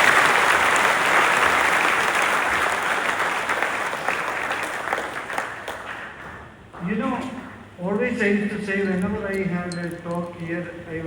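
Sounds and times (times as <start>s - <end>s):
audience applauding: 0.0s - 6.7s.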